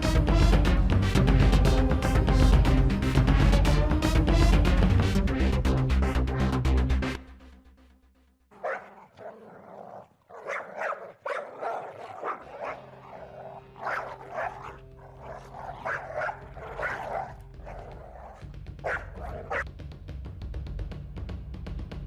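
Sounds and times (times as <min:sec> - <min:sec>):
dog barking: 0:08.5 - 0:19.7.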